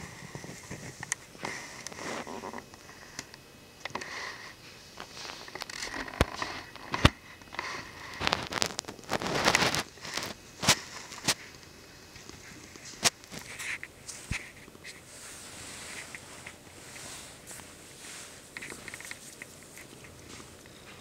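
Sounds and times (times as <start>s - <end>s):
scraping rustles: 3.9s - 11.6s, 12.2s - 21.0s.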